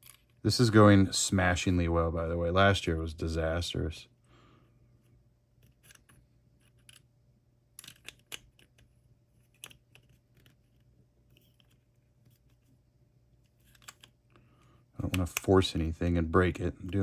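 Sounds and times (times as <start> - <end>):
plastic parts clicking: 7.8 - 11.8, 13.4 - 15.6.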